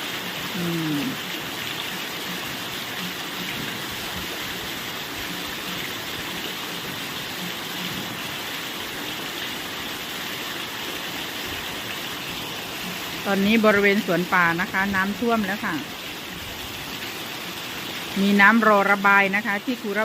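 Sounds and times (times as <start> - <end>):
heavy rain pouring: 0.0 - 20.0.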